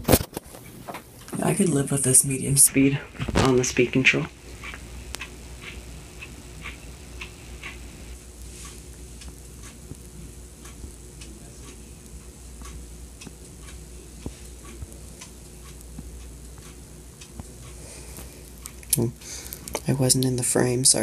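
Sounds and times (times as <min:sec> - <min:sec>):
ceiling fan humming and ticking: 0:00.0 - 0:21.0.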